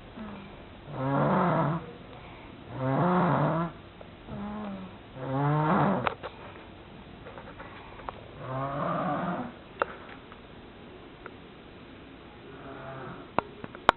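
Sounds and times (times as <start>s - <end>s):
faint breaths: 0.0s - 10.3s, 12.4s - 13.4s
pet snoring loudly: 0.2s - 1.9s, 2.7s - 6.1s, 8.4s - 9.6s, 12.5s - 13.3s.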